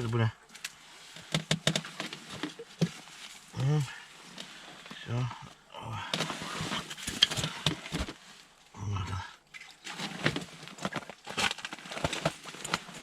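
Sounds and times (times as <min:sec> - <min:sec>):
low grunt-like sound: 0:03.5 - 0:04.1, 0:05.0 - 0:06.3, 0:08.8 - 0:09.4.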